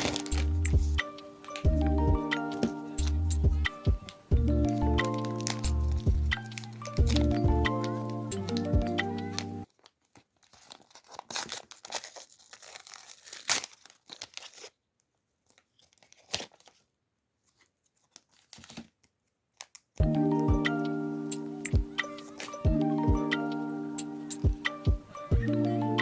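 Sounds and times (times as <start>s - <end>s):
packaging tearing and crinkling: 0.0s - 1.7s, 2.4s - 14.8s, 15.4s - 20.0s, 21.6s - 22.7s
background music: 0.0s - 9.6s, 20.0s - 26.0s.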